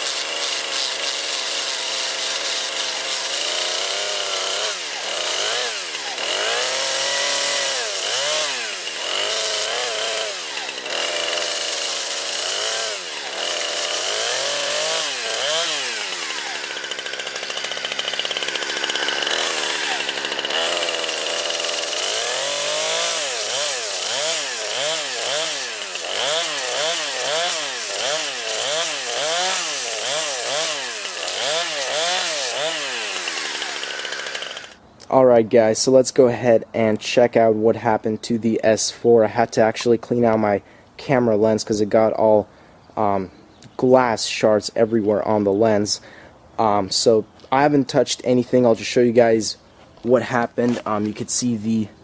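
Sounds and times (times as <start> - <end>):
chainsaw revving: 0.0 - 35.2, 50.0 - 51.9.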